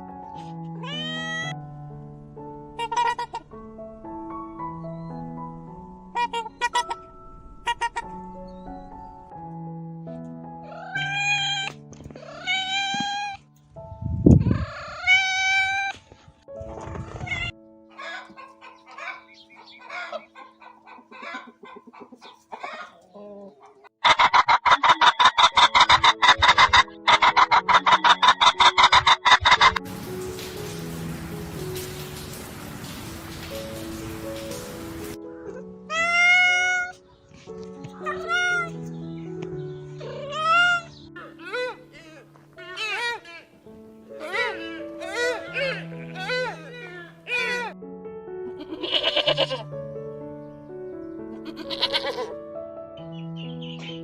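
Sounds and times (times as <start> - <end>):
background music: 0.0 - 54.0
cat meowing: 0.8 - 1.6, 10.7 - 13.4, 14.5 - 16.0, 35.9 - 37.0, 38.0 - 38.7, 44.2 - 47.8, 48.6 - 49.6, 51.4 - 52.3
chicken clucking: 18.0 - 29.8.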